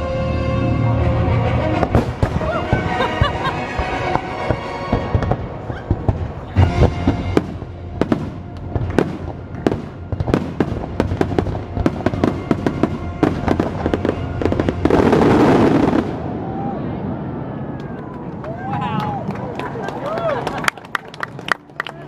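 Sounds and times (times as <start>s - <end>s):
music soundtrack: 0.0s - 16.3s
firework bursts and bangs: 1.8s - 16.6s.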